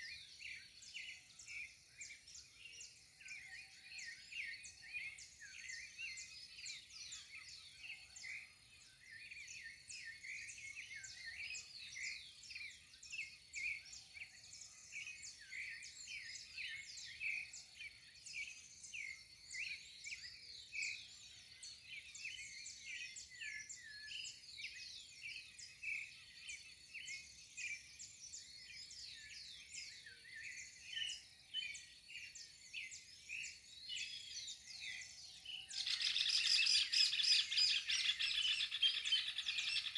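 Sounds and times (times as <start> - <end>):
birds chirping: 33.4 - 39.9.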